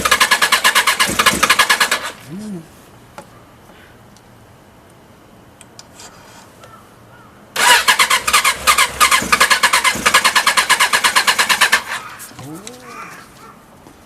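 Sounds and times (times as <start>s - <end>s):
motorcycle electric starter cranking: 0.0s - 2.2s, 7.6s - 12.0s
motorcycle engine chugging: 0.0s - 2.2s, 7.6s - 12.2s.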